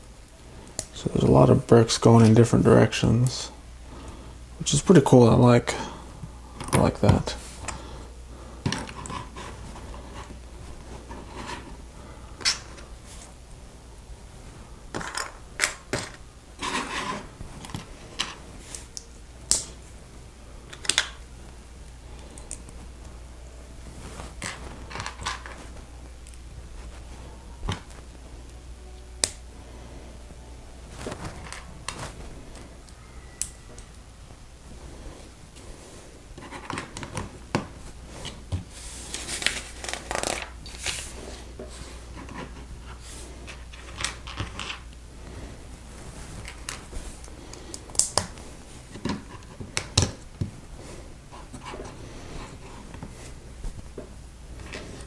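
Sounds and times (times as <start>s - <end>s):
rustling: 23.7s - 28.6s, 34.6s - 49.8s.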